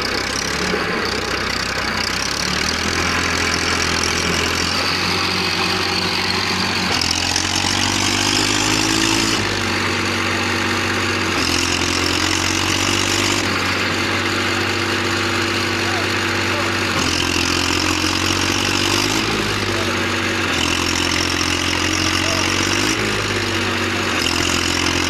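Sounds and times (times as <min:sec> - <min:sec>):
tractor diesel engine running: 0:00.0 - 0:25.0.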